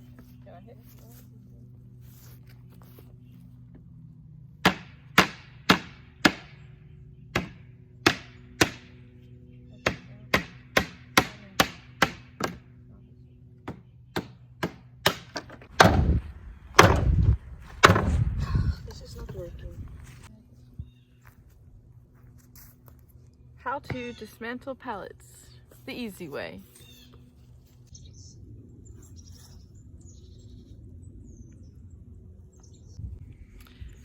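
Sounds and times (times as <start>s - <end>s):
wood splitting: 14.2s - 16.2s, 16.8s - 18.4s
mallet knocking on wooden planks: 16.8s - 17.1s, 17.8s - 18.2s.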